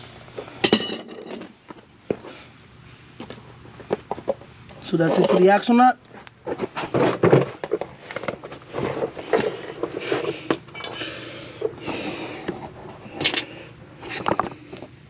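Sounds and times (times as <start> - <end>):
metal hand tools clinking: 0.6 - 2.6, 6.6 - 11.4.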